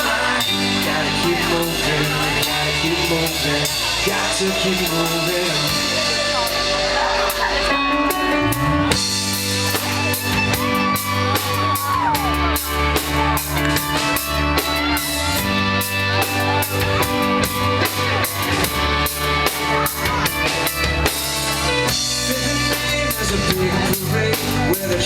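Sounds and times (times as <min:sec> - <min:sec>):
bending guitar lead line: 0:00.0 - 0:25.0
rock band playing: 0:00.0 - 0:25.0.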